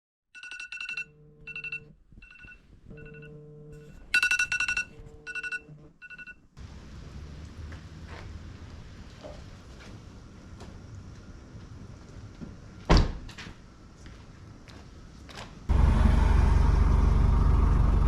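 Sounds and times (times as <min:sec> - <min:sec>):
phone vibration buzz: 0:00.4 - 0:06.0
trilling electronic alarm beeps: 0:00.4 - 0:06.4.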